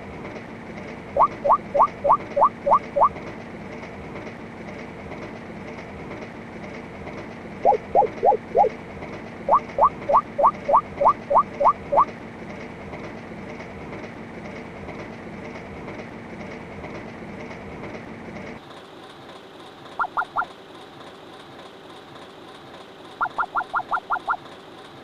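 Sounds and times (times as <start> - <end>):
train rumbling along track: 0.0 - 25.0
short rising chirps: 1.2 - 3.1, 7.6 - 8.8, 9.5 - 12.1, 20.0 - 20.5, 23.2 - 24.4.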